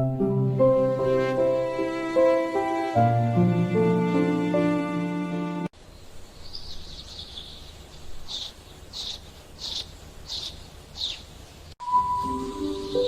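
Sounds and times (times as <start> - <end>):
bird chirping: 5.8 - 13.0.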